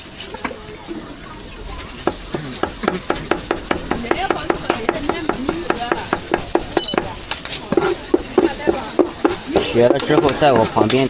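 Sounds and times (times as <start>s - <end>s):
cleaver chopping on wooden board: 7.8s - 10.7s.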